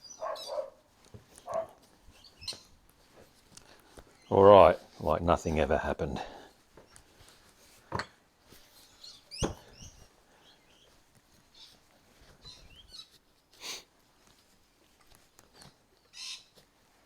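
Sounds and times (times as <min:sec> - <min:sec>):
small high squeaks: 0:00.0 - 0:02.8, 0:10.7 - 0:13.4.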